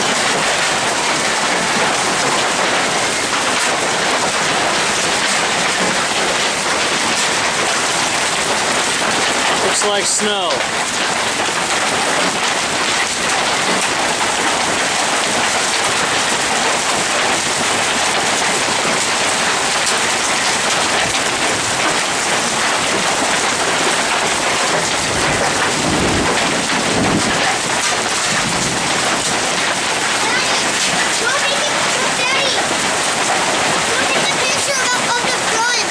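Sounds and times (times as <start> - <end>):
hail pelting down: 0.0 - 35.9.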